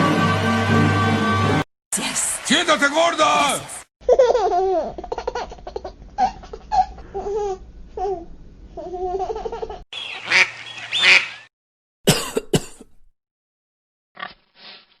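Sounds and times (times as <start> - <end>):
baby giggling: 4.1 - 8.2, 8.8 - 9.8
duck quacking: 10.0 - 11.4
short coughs: 12.1 - 13.0.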